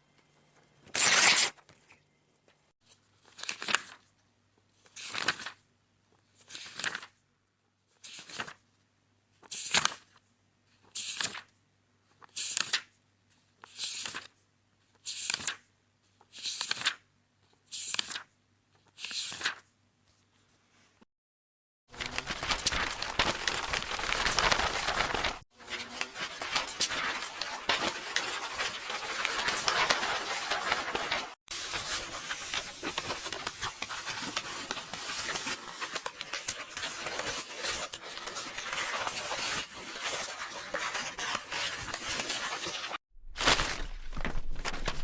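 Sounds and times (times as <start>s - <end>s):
paper pages rustling: 0.9s - 1.8s, 2.9s - 4.2s, 4.8s - 5.6s, 6.3s - 7.2s, 7.9s - 8.6s, 10.9s - 11.5s, 13.6s - 14.4s, 15.0s - 15.6s, 16.2s - 17.0s, 17.8s - 20.6s, 21.9s - 45.0s.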